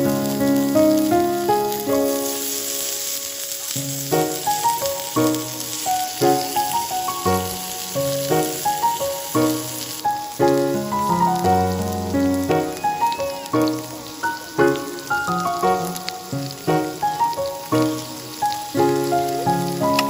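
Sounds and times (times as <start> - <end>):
background music: 0.0 - 20.0
food sizzling: 0.0 - 20.0.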